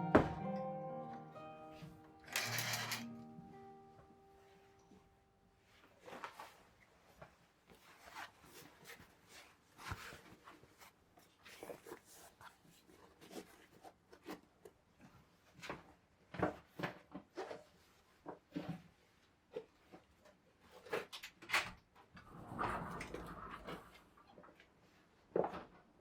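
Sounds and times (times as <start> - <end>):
objects being handled: 1.8 - 3.2.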